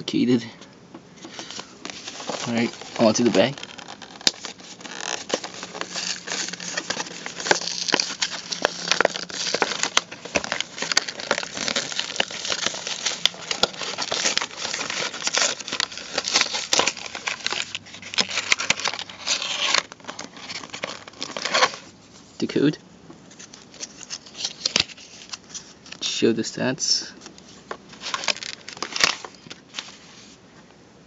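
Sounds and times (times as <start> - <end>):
plastic bag crinkling: 1.2 - 21.9, 27.2 - 30.0.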